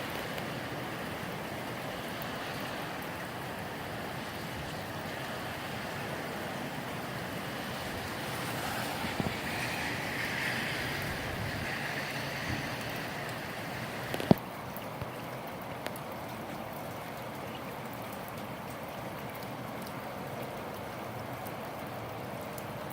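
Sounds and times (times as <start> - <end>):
gusty wind: 0.0 - 14.4
rain falling: 0.0 - 22.9.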